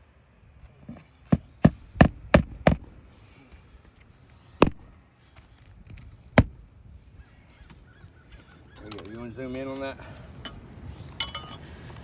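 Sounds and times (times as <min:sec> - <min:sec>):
hammer striking roofing nails: 0:01.3 - 0:02.8, 0:04.6 - 0:04.8.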